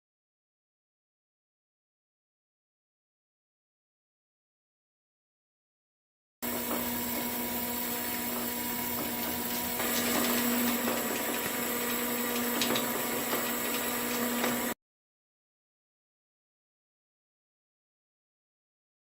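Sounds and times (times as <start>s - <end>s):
machinery humming and whining: 6.4s - 14.8s.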